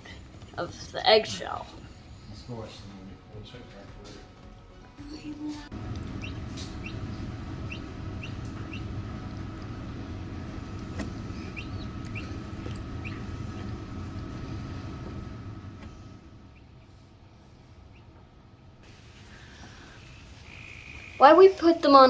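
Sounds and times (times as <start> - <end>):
incubator fan hum and whine: 0.0 - 22.0
chick chirps sliding down: 11.4 - 13.3.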